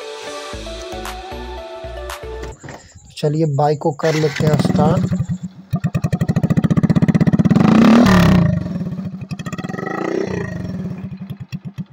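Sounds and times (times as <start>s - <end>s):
motorcycle engine revving and idling: 4.0s - 11.9s.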